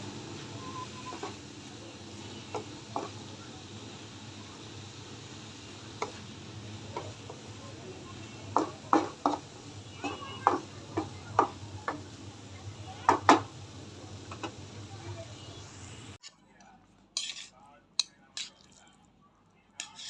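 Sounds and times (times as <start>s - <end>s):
utensil scraping a cooking pan: 17.2s - 18.8s, 19.8s - 20.0s.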